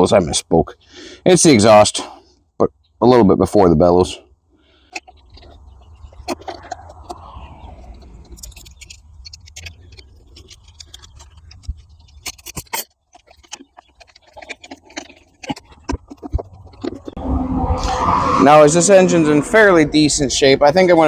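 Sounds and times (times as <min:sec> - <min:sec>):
low rumble: 0:06.5 - 0:08.8, 0:17.1 - 0:20.8
hand tools clicking and scraping metal: 0:08.0 - 0:17.2.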